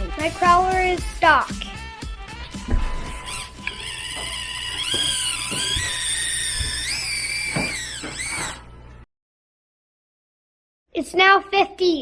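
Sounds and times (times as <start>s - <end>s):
small electric motor whining: 3.0s - 8.8s.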